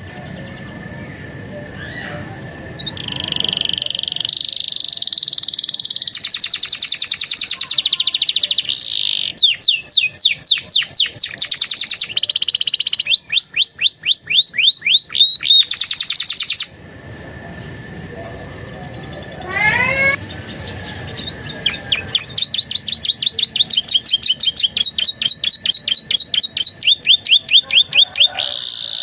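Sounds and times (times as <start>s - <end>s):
canary singing: 0.0s - 16.8s, 17.8s - 29.0s.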